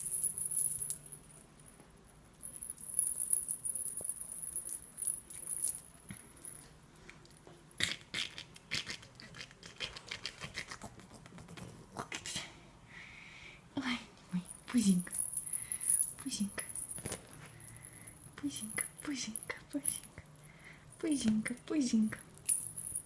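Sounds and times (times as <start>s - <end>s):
jingling toy rattle: 0.0s - 1.4s, 2.4s - 6.6s, 14.4s - 23.0s.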